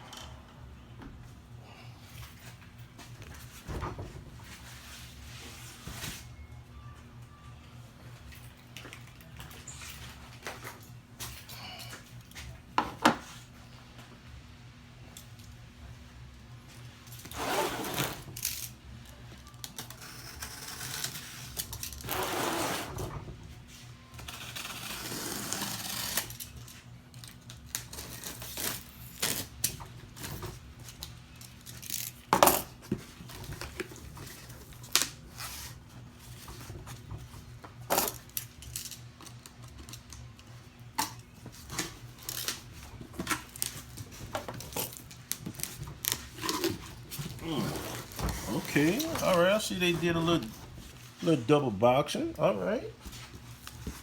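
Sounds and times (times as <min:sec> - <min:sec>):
tape and cardboard tearing: 0:19.7 - 0:23.0, 0:24.2 - 0:30.3.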